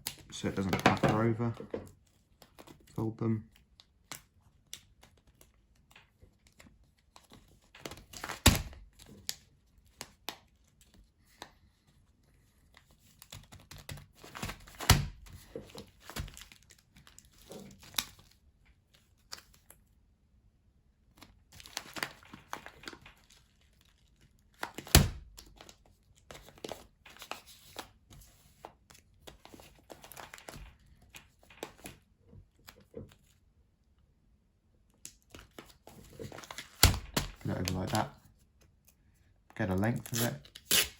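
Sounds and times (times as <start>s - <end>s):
crinkle of tape and bag: 21.1s - 27.9s, 39.8s - 40.9s
duct tape being pulled: 40.0s - 40.9s.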